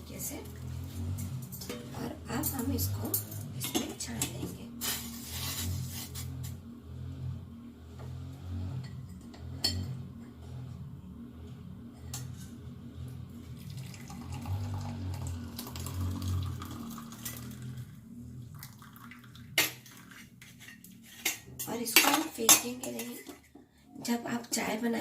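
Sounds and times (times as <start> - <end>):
utensils clinking: 1.1 - 5.1, 19.5 - 23.5
liquid trickling into cup: 13.5 - 17.8, 18.5 - 20.1.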